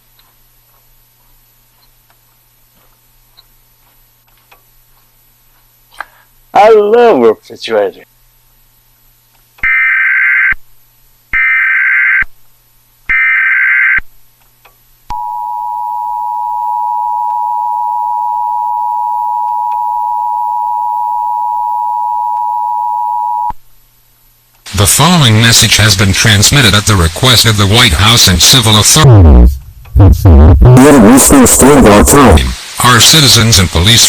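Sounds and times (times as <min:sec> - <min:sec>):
data tone bursts: 0:15.1 - 0:23.5
two-tone attention signal: 0:15.1 - 0:23.5.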